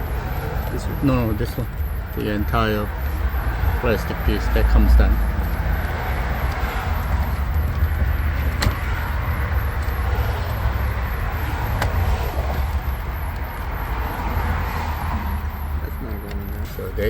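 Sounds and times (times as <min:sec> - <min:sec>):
steady low rumble: 0:00.0 - 0:17.0
sharp clicks: 0:05.3 - 0:16.7.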